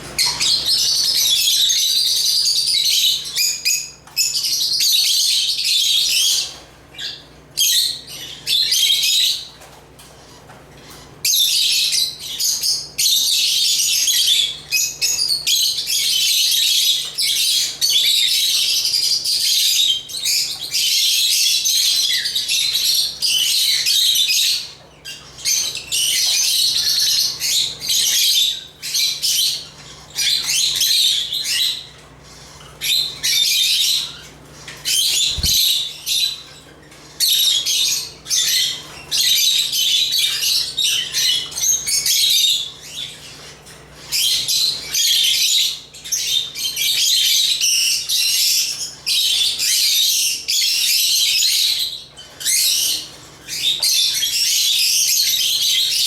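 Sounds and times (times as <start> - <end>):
lovebirds chirping shrilly: 14.2 - 56.0.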